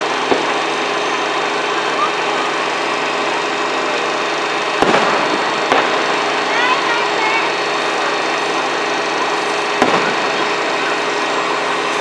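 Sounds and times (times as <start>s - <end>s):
steady droning noise: 0.0s - 12.0s
firework bang: 4.8s - 6.3s, 9.8s - 12.0s.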